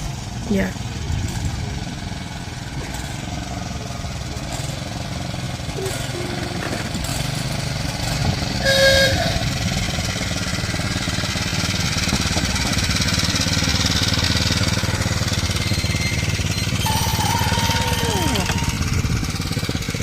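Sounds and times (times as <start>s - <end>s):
miniature train running: 0.0s - 20.0s
train toot: 5.7s - 7.0s, 8.5s - 11.4s, 13.1s - 19.4s.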